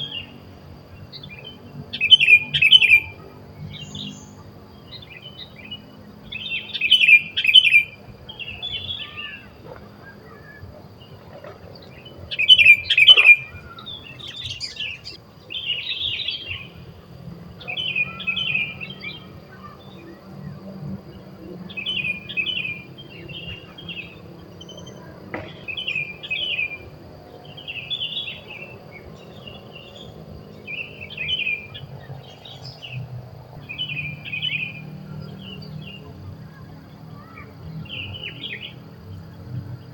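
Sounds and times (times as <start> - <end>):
bulbuls chirping: 1.4 - 15.2.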